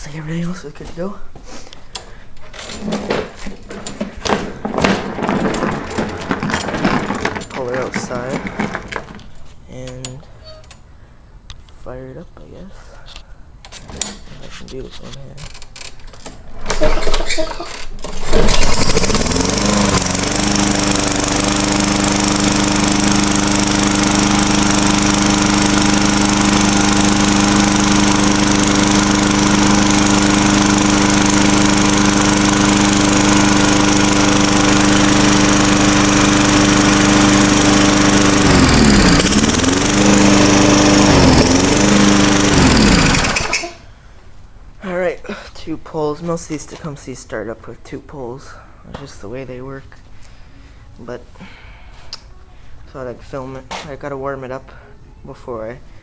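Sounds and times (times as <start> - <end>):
lawn mower engine running: 3.7 - 9.3, 18.0 - 43.8
recoil starter pull: 16.7 - 43.8.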